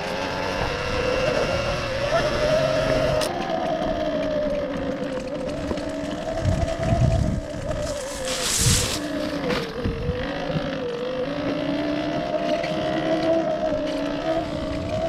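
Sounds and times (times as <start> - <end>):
electric motorcycle motor whine: 0.0 - 15.0
wind buffeting microphone: 2.9 - 10.9, 13.6 - 15.0.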